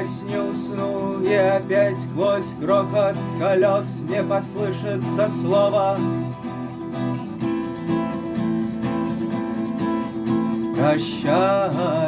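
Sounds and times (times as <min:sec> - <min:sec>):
guitar strumming: 0:00.0 - 0:12.0.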